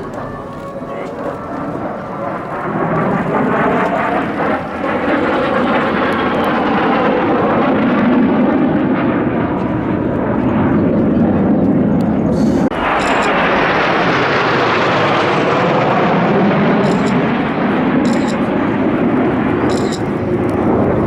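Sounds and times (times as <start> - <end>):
jet planes flying past: 0.0 - 21.0.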